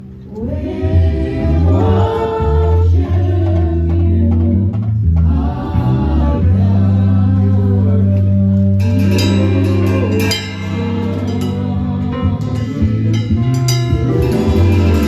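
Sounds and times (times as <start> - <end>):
heavy sustained bass notes: 0.0 - 15.0
person singing: 5.3 - 15.0
cymbal hits: 8.8 - 11.9.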